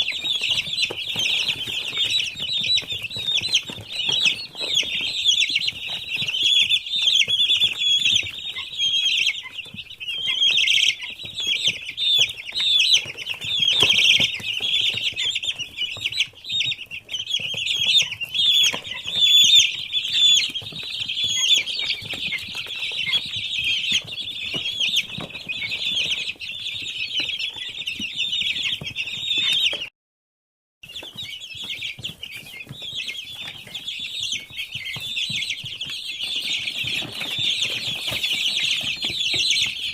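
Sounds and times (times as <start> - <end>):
chicks peeping: 0.0 - 29.9, 30.8 - 39.9.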